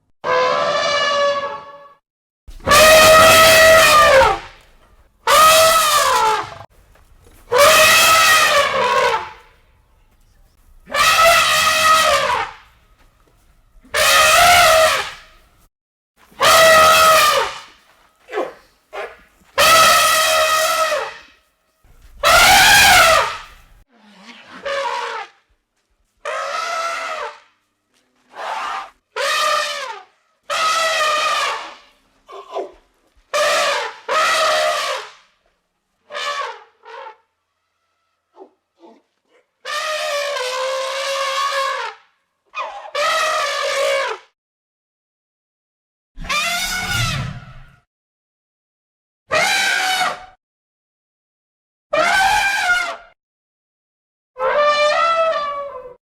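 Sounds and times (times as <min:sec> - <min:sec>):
elephant trumpeting: 0:02.6 - 0:04.6, 0:05.2 - 0:06.6, 0:07.4 - 0:09.5, 0:10.8 - 0:12.7, 0:13.8 - 0:15.4, 0:16.4 - 0:21.4, 0:22.0 - 0:25.4, 0:26.2 - 0:27.4, 0:28.3 - 0:35.1, 0:39.6 - 0:41.9, 0:42.6 - 0:44.2, 0:46.2 - 0:47.7, 0:52.0 - 0:53.0, 0:54.4 - 0:55.8.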